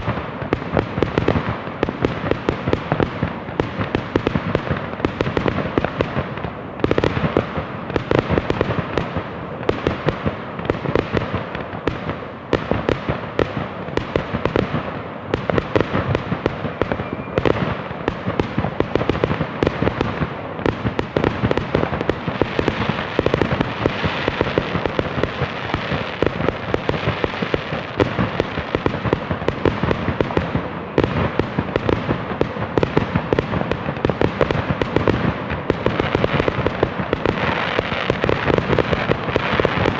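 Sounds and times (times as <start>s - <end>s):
fireworks bangs and crackles: 0.0s - 39.9s
hissing crackle: 15.3s - 39.9s.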